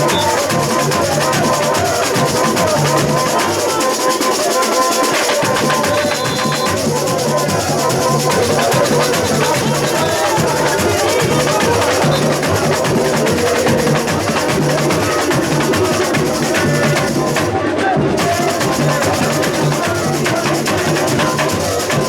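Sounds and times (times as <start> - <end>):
snare drums and shakers rattling: 0.0 - 22.0
bass drums pulsing: 5.4 - 17.5.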